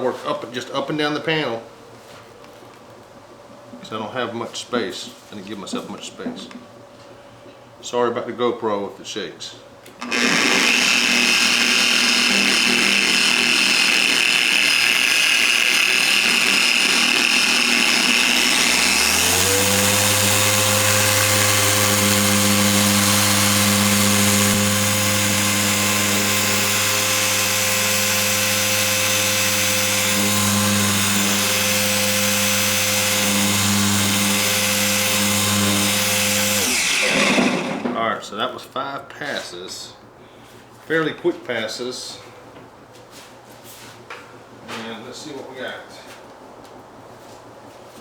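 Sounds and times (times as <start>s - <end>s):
electric polisher running: 10.0s - 38.0s.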